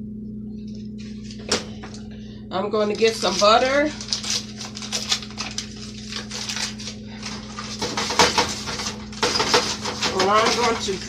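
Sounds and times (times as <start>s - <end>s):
steady low hum: 0.0s - 11.0s
dishes and utensils clattering: 7.5s - 11.0s.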